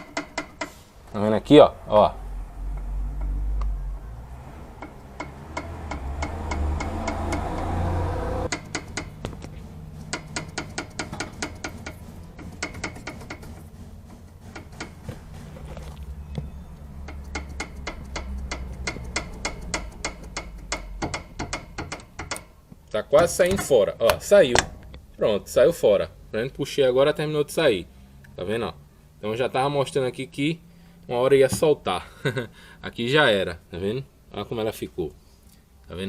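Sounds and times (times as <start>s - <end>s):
loose ball joint clacking: 0.0s - 0.8s, 4.7s - 7.8s, 8.5s - 25.2s.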